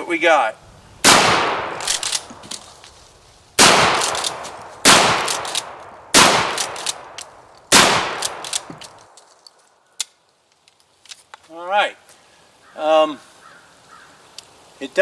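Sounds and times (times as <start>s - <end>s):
shotgun shots echoing: 1.0s - 2.3s, 3.6s - 7.1s, 7.7s - 8.7s
shotgun slide clacks: 1.8s - 2.6s, 4.0s - 4.4s, 5.1s - 9.0s.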